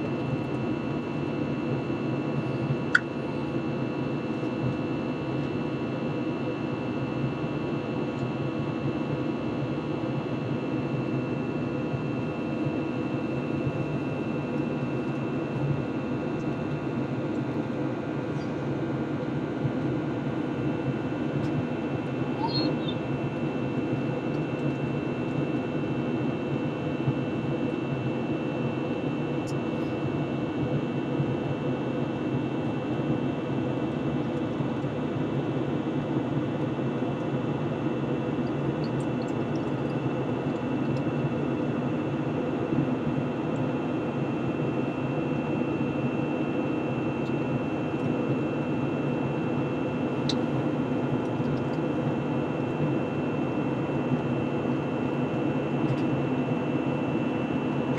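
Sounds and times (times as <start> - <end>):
high-pitched whine: 21.9 - 23.3.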